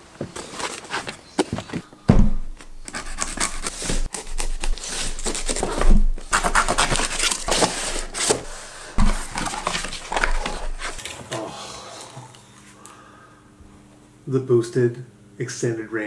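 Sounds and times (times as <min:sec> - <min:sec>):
packaging rustling and tearing: 0:00.4 - 0:01.3, 0:02.6 - 0:11.3.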